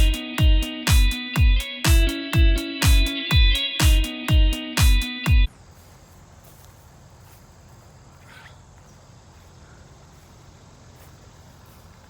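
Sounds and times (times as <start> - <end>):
electronic music with kick drum: 0.0 - 5.5
crickets chirping: 5.5 - 12.0.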